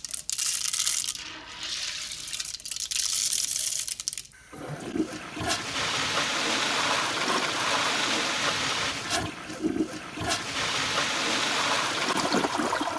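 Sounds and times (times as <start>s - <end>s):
toilet flushing: 4.4s - 12.9s.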